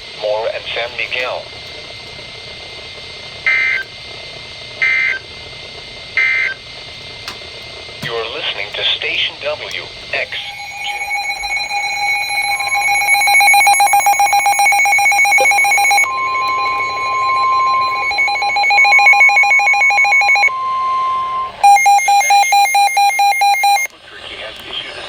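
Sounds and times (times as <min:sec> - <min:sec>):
harsh warbling digital data burst: 0:10.2 - 0:23.9
pulsing electronic alarm beep: 0:10.2 - 0:23.9
steady alert tone: 0:10.3 - 0:23.9.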